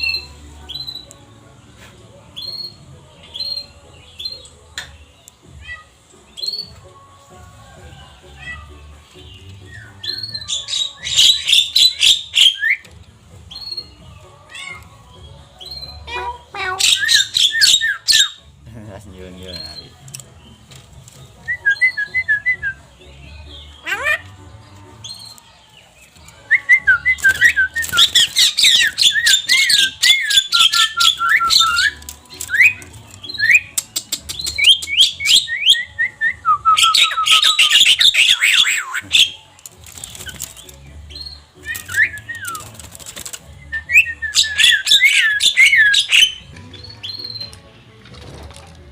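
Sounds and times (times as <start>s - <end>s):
myna harsh chattering calls: 15.6s - 18.4s, 27.4s - 35.4s, 36.8s - 39.5s
sharp clicks: 31.1s - 35.1s.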